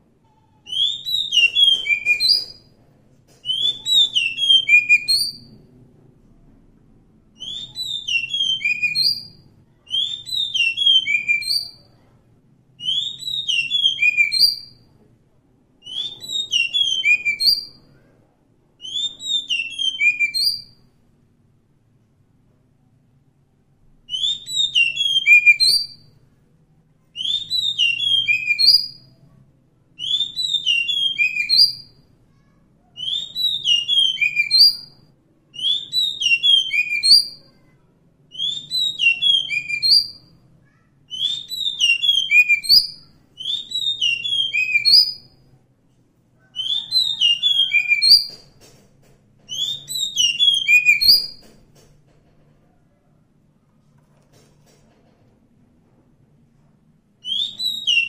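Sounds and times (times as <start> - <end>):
bird whistling song: 0.7 - 2.7, 3.4 - 5.6, 7.4 - 12.0, 12.8 - 14.9, 15.8 - 17.9, 18.8 - 20.8, 24.1 - 26.1, 27.2 - 29.2, 30.0 - 32.0, 33.0 - 35.0, 35.6 - 37.7, 38.3 - 40.4, 41.1 - 45.4, 46.4 - 48.5, 49.5 - 51.5, 57.2 - 58.0.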